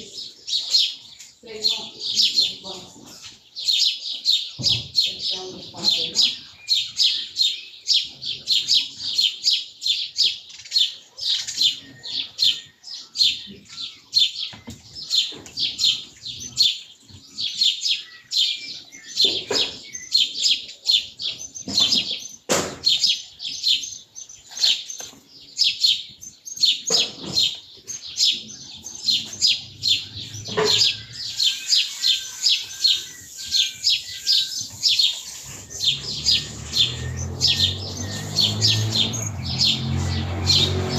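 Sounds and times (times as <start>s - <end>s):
songbirds chirping: 0.0s - 40.9s
sharp knocks: 21.6s - 23.0s.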